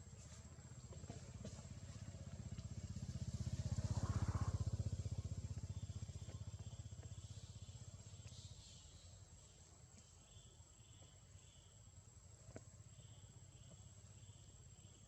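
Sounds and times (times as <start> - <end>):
vehicle engine passing by: 0.1 - 8.4.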